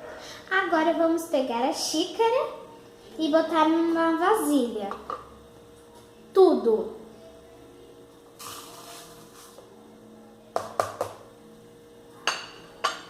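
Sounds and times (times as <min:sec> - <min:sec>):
corn meal poured into bowl: 0:08.4 - 0:09.6
cup knocking against bowl: 0:10.6 - 0:11.2.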